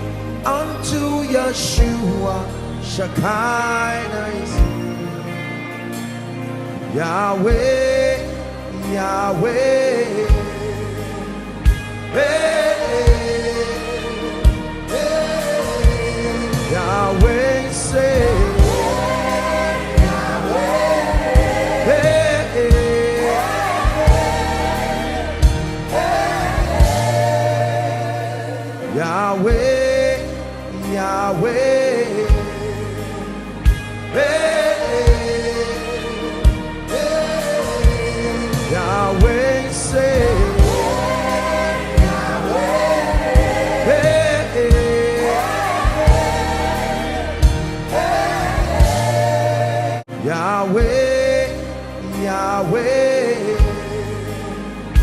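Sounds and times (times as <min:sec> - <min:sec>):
choir singing: 0:00.0 - 0:55.0
person singing gospel: 0:00.0 - 0:55.0
steady drum beat: 0:18.2 - 0:27.6, 0:40.2 - 0:49.5.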